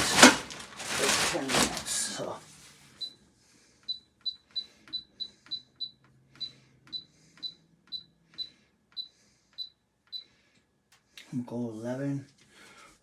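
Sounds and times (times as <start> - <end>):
air fryer beeping: 3.9 - 10.3.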